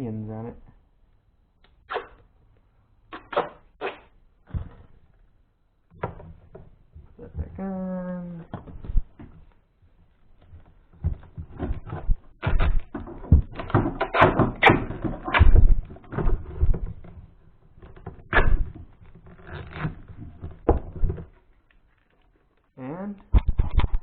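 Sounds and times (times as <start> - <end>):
knocks and clicks of handling: 5.9 - 7.5, 10.4 - 22.6.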